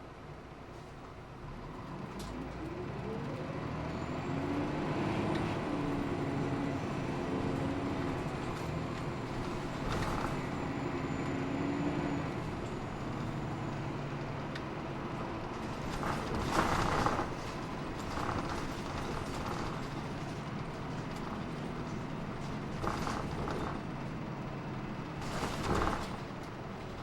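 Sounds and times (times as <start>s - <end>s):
diesel bus engine: 0.0s - 27.0s
road rumble: 0.0s - 27.0s
body creaks and rattles: 7.8s - 11.2s, 15.2s - 24.0s, 25.2s - 27.0s.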